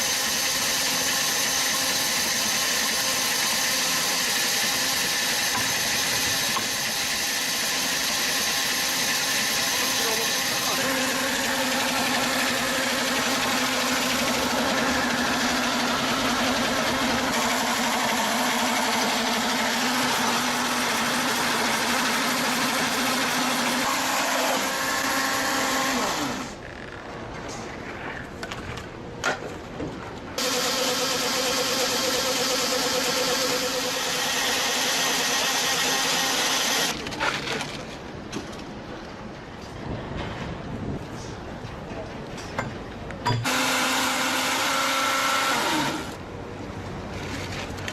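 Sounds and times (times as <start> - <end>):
machine with higher hum: 0.0 - 26.6, 30.4 - 37.0
wood-cutting machinery running: 0.0 - 26.6, 30.4 - 37.8, 43.4 - 46.2.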